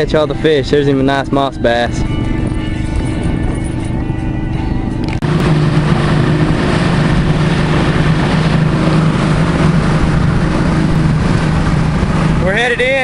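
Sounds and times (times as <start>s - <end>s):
outboard motor running: 0.0s - 13.0s
rush of wind and water: 5.2s - 13.0s.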